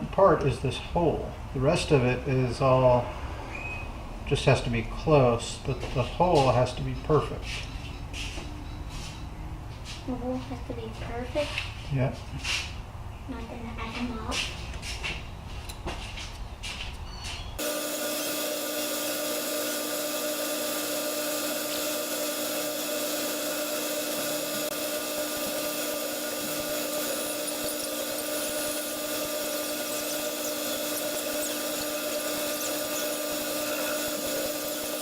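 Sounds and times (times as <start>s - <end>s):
metal lathe whining: 17.6s - 35.0s.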